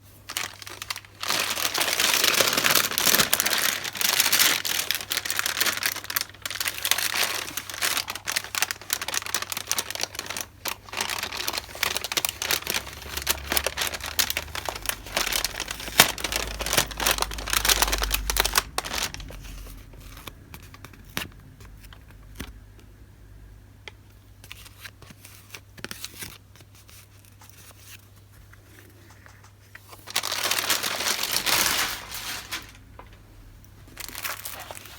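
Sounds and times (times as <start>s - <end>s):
packaging crinkling and tearing: 0.0s - 22.6s, 29.8s - 33.2s, 33.8s - 34.9s.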